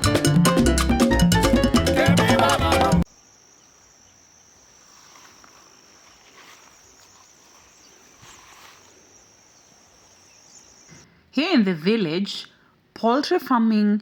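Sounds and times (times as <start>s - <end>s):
insect chirring: 3.0s - 11.0s.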